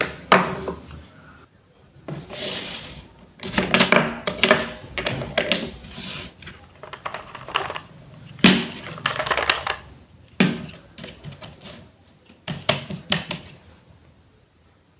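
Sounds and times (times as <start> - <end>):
wooden toy pieces clacking: 6.5 - 11.5.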